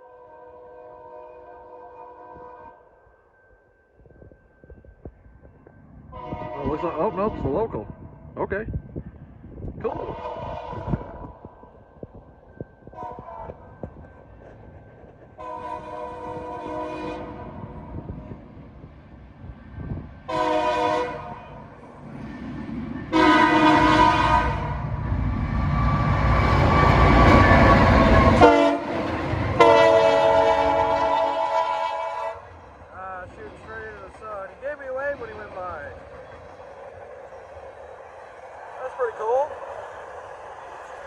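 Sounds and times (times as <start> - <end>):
locomotive air horn blasts: 0.0 - 2.8, 6.1 - 7.6, 9.9 - 11.3, 12.9 - 13.7, 15.4 - 17.7, 20.3 - 21.6, 23.1 - 24.8, 27.2 - 32.5
locomotive engine and wheel rumble: 4.2 - 41.0.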